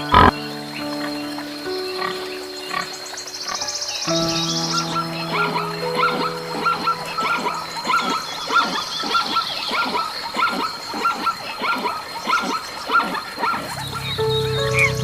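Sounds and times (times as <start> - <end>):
animal yelping: 4.9 - 13.9.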